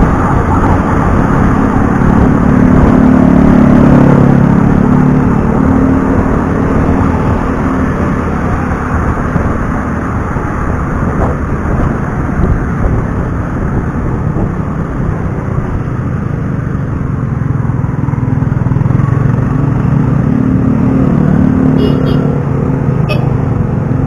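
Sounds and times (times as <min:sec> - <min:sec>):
motorcycle engine rumble: 0:21.7 - 0:24.0.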